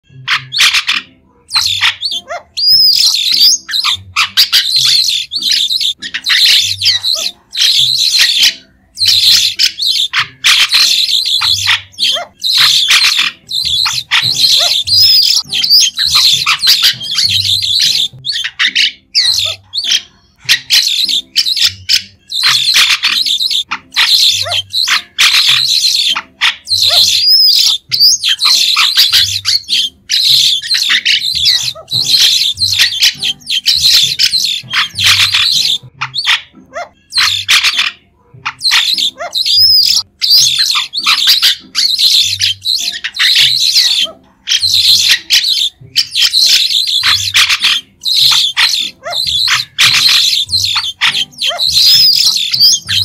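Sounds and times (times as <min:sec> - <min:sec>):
starling shrill calls: 0:00.2 - 0:53.0.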